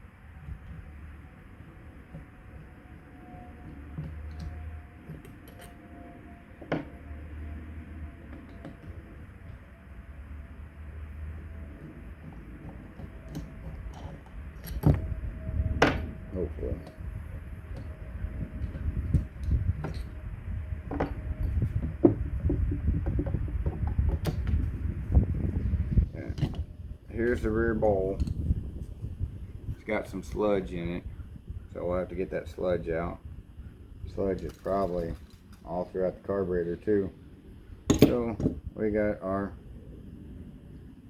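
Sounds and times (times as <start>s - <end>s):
low handling rumble: 0.0s - 41.0s
steady low hum: 0.0s - 41.0s
metal parts clicking and knocking: 12.3s - 15.1s, 37.9s - 38.6s
sharp metal clack: 37.9s - 38.3s.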